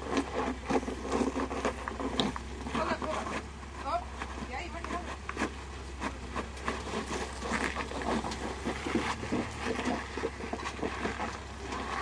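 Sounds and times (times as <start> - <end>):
engine running low: 0.0 - 12.0
tyres crunching on rock: 0.0 - 12.0.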